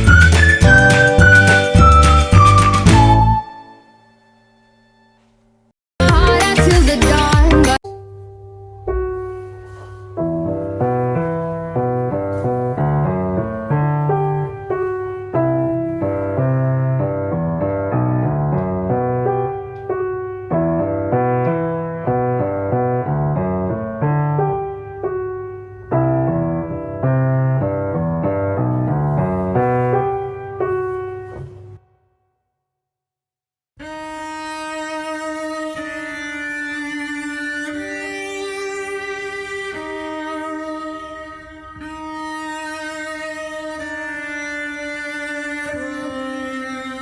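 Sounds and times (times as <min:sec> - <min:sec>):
solo piano music: 0:00.0 - 0:04.4, 0:07.8 - 0:31.8.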